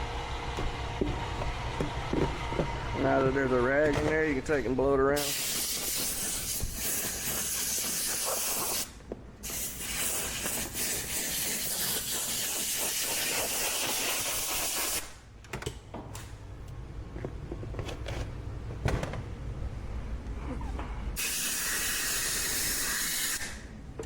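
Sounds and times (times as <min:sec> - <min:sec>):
compressed air hissing: 0:05.2 - 0:15.1, 0:21.2 - 0:23.6.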